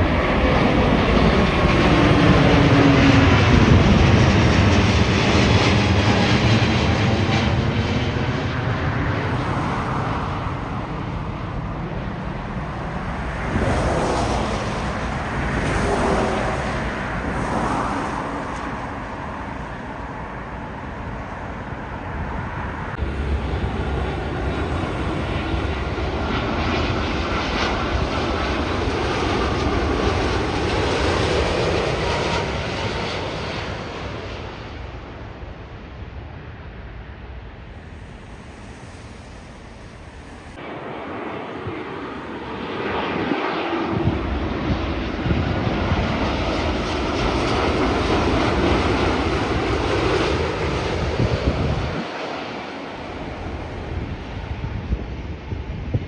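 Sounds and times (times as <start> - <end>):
jet airliner engine noise: 0.0 - 56.0.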